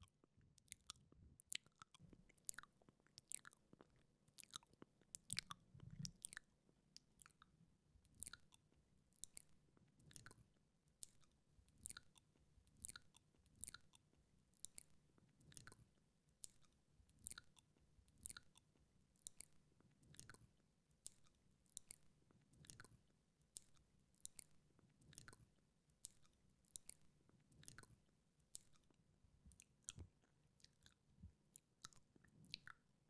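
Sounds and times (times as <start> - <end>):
wet mouth smacks and tongue clicks: 0.6 - 10.4, 11.0 - 15.8, 16.4 - 18.6, 31.6 - 32.8.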